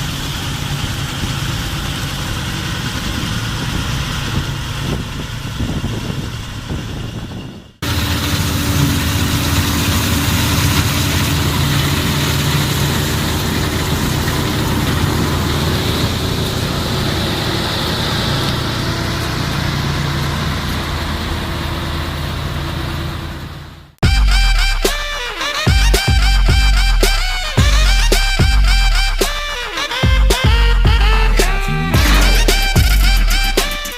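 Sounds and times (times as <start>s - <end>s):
combine harvester engine drone: 0.0s - 25.6s, 30.6s - 33.9s
music: 24.0s - 33.9s.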